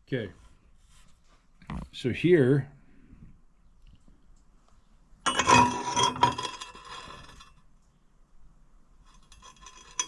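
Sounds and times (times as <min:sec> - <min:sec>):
steel plate clanking on metal: 0:05.3 - 0:07.4.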